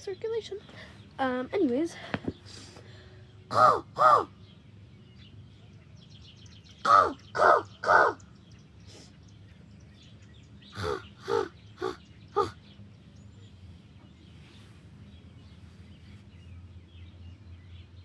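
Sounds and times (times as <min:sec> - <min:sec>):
person imitating crow caws: 0:03.5 - 0:04.3, 0:06.9 - 0:08.2, 0:10.8 - 0:12.6.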